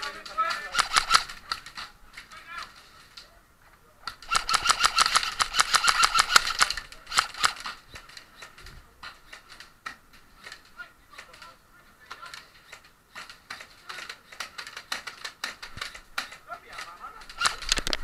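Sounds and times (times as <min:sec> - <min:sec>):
airsoft gun firing: 0:00.7 - 0:01.6, 0:04.2 - 0:07.8, 0:17.3 - 0:17.8.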